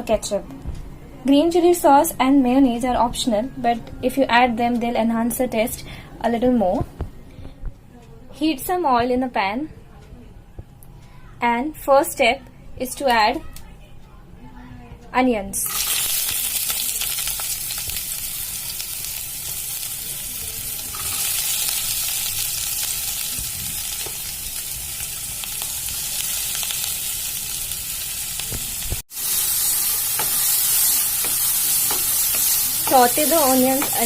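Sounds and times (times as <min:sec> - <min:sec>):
onions sizzling in hot oil: 0:15.6 - 0:34.0.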